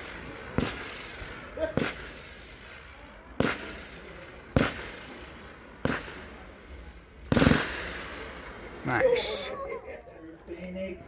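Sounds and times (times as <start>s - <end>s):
fireworks bangs: 0.0s - 6.6s, 7.3s - 9.6s.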